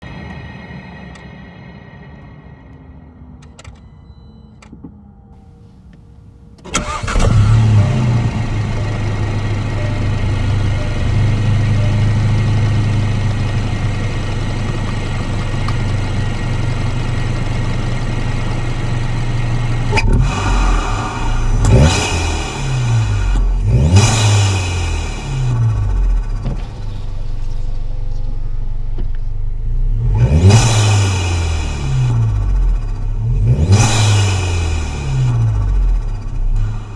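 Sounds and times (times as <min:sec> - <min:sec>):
car engine starting and idling: 0:00.0 - 0:36.9
car engine revving: 0:06.7 - 0:36.9.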